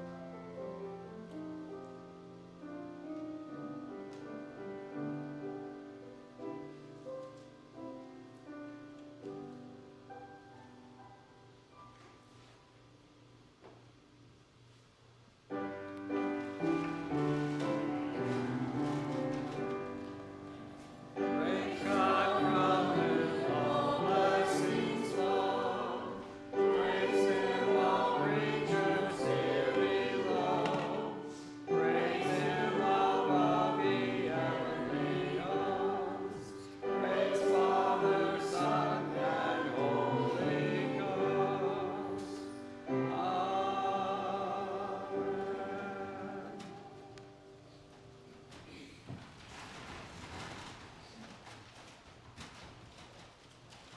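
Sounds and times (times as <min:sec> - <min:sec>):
choir singing a hymn: 0:16.0 - 0:47.6.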